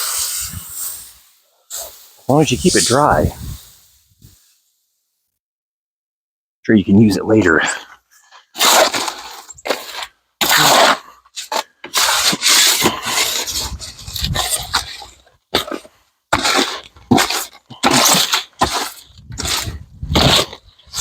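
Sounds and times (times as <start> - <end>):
concrete scraping by hand: 8.2 - 21.0.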